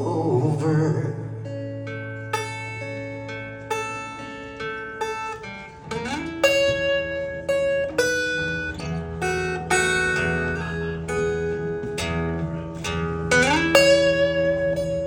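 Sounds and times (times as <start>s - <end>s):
acoustic guitar picking: 0.0s - 15.0s.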